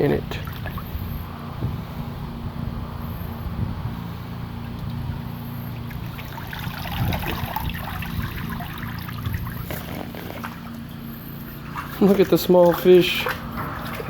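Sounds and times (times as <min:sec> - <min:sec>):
creek water trickling: 0:00.0 - 0:01.6, 0:04.5 - 0:14.0
low motor hum: 0:00.0 - 0:14.0
dog splashing in water: 0:05.6 - 0:14.0.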